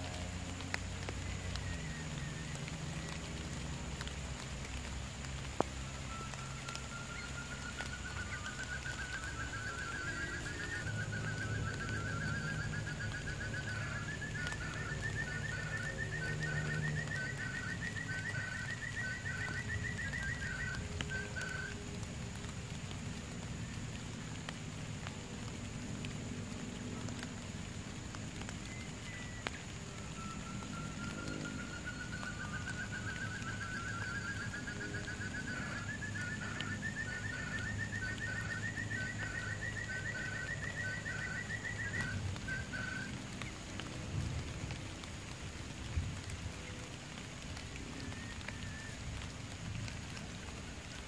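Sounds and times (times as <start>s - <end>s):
bird trill rising in pitch: 6.1s - 21.8s.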